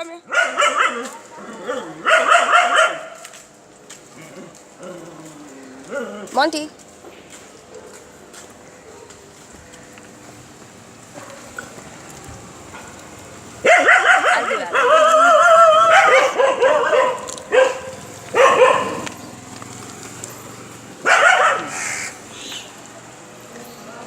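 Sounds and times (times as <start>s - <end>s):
puppies yelping and whining: 14.4s - 19.2s.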